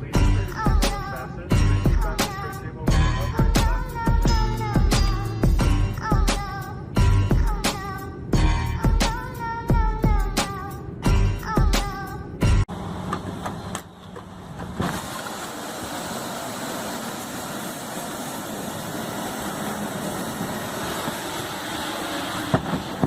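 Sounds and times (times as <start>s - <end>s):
rushing aircraft engine: 12.7s - 23.0s.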